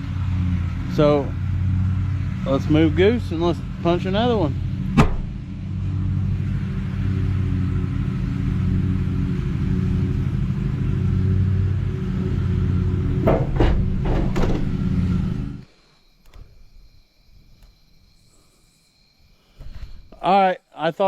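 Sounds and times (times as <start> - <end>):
tractor engine running: 0.0 - 15.7.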